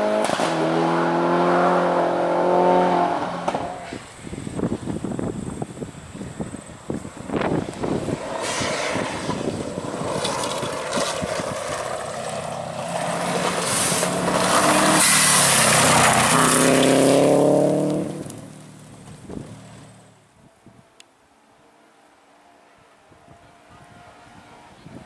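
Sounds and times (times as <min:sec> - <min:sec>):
rally car engine: 0:00.0 - 0:04.2, 0:07.3 - 0:20.2
tyres on gravel: 0:03.4 - 0:20.1.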